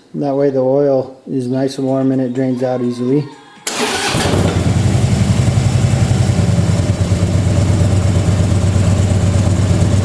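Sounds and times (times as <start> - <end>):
motorcycle engine idling: 3.9 - 10.0.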